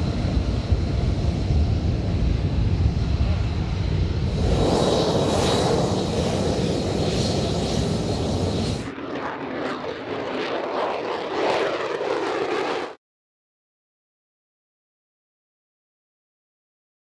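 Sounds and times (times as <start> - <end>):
crackly rushing jet noise: 0.0 - 13.0
jet engine running loud: 0.0 - 13.0.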